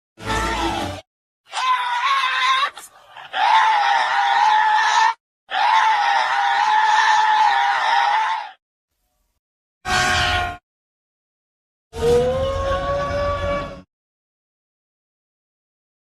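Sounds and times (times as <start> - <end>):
creature screeching: 0.2 - 8.6, 9.9 - 10.6, 12.0 - 13.8.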